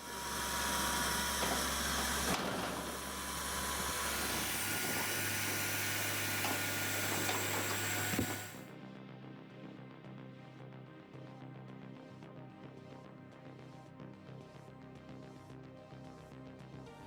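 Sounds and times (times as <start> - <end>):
wood-processing machine running: 0.0 - 8.6.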